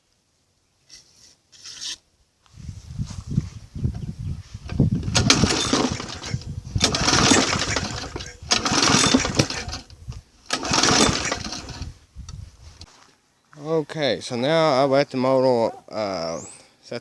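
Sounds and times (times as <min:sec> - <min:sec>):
lawn mower engine rough bursts: 0:04.6 - 0:12.0.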